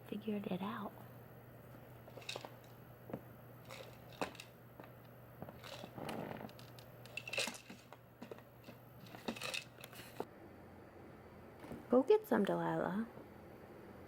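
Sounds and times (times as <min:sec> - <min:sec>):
treats rattling: 0:02.1 - 0:02.8, 0:03.6 - 0:10.2.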